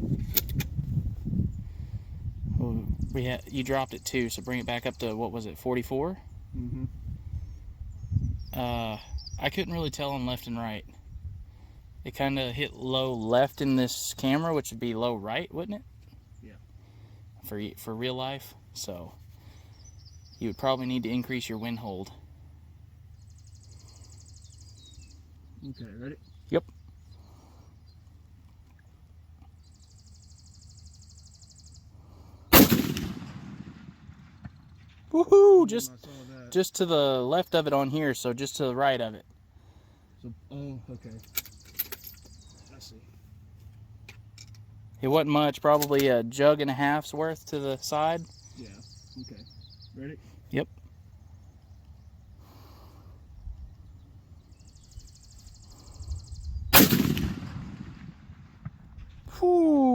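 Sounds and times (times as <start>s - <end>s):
rifle shot with rumbling echo: 32.5s - 35.1s, 56.7s - 59.3s.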